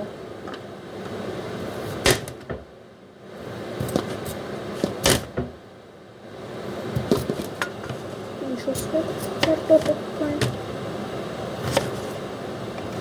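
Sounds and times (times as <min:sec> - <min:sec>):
kitchen items knocking and clattering: 0:02.0 - 0:02.7, 0:03.8 - 0:05.6, 0:07.0 - 0:08.2, 0:08.8 - 0:10.7.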